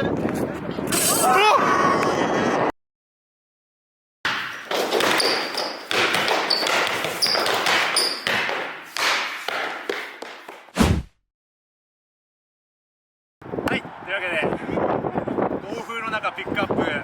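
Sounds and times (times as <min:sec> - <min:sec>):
gusty wind on microphone: 0:00.0 - 0:02.7, 0:13.4 - 0:17.0
sneaker squeaks: 0:04.4 - 0:09.1
heavy thump: 0:10.8 - 0:11.1.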